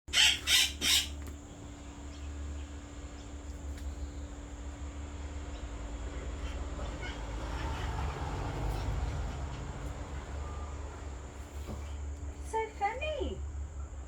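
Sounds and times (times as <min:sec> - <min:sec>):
parrot squawks: 0:00.1 - 0:01.2
steady low hum: 0:00.1 - 0:14.0.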